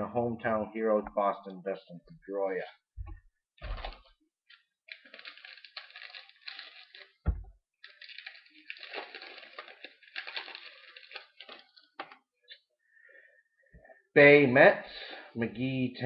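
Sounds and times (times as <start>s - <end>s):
foil wrapper crinkling and tearing: 3.6s - 7.2s, 7.8s - 12.2s
sharp thump: 7.2s - 7.6s.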